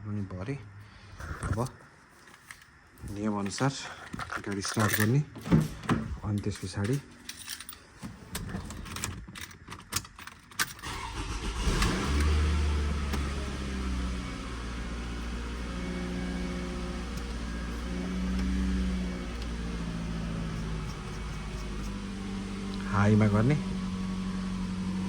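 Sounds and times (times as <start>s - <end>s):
keys rattling: 3.4s - 11.2s, 16.3s - 22.8s
car engine starting and idling: 10.8s - 25.0s.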